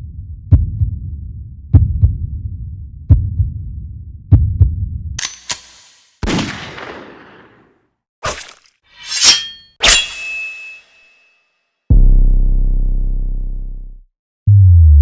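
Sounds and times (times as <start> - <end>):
heartbeat thumps: 0.4 - 5.0.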